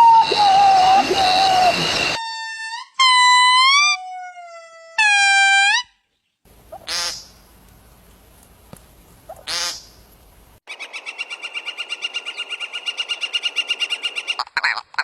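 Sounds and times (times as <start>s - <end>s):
loud rising pulsed animal call: 0.0s - 5.4s.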